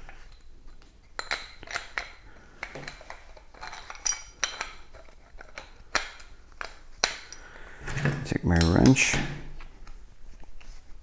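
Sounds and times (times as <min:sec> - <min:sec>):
metal pipe fittings clinking: 0:01.2 - 0:09.7.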